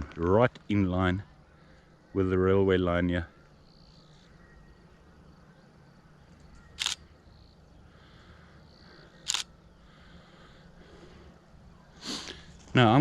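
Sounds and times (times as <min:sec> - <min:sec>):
camera shutter clicks: 0:06.6 - 0:07.1, 0:09.2 - 0:09.5.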